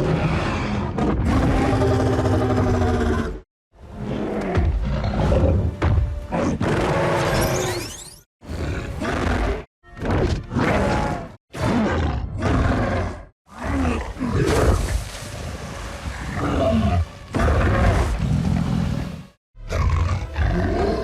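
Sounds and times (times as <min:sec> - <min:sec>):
ape-like creature roars and growls: 0:00.0 - 0:03.4.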